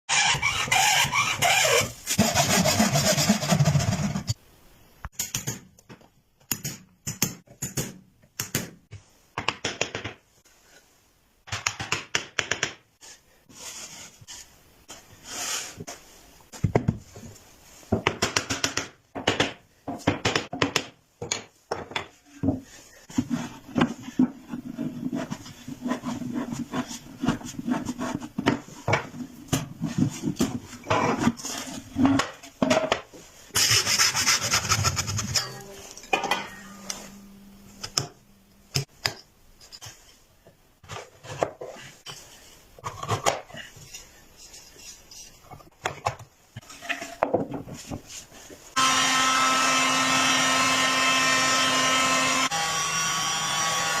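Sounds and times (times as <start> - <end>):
sawing or rasping: 0.1 - 4.3, 33.5 - 35.6, 48.8 - 54.0
tools knocking and scraping wood: 16.5 - 37.0, 37.8 - 48.2.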